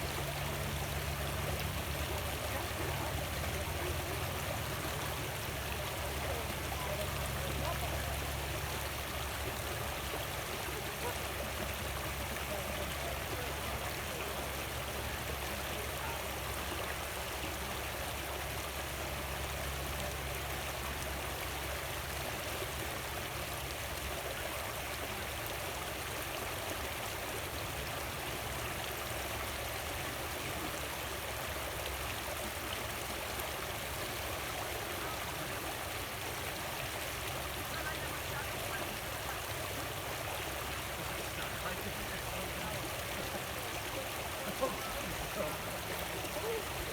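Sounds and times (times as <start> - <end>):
creek water running: 0.0 - 46.9.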